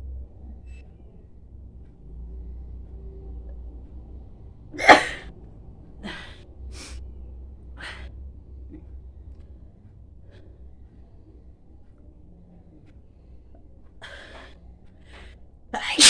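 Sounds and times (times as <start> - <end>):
woman sneezing: 4.8 - 5.2, 15.8 - 16.0
breathy sniffs: 6.7 - 7.0.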